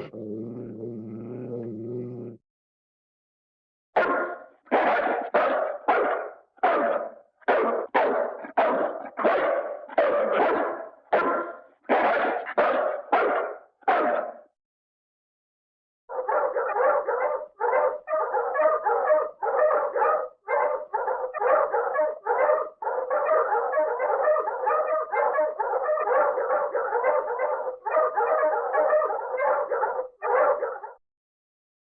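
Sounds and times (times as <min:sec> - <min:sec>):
dogs barking and howling: 0:04.0 - 0:14.4, 0:16.1 - 0:31.0.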